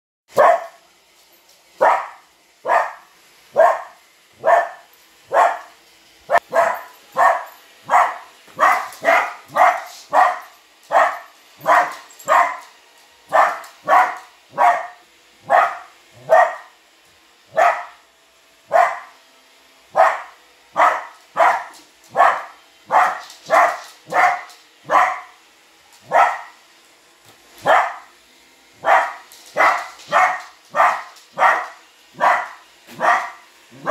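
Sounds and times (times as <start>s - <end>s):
dog barking sharply: 0.3s - 0.8s, 28.8s - 33.9s.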